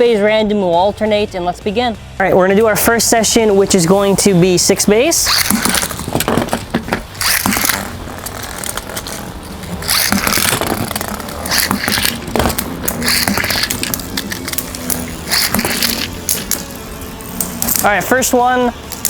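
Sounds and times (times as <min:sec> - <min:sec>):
steady low hum: 0:00.0 - 0:19.0
plastic spinning tops clicking: 0:05.2 - 0:18.1.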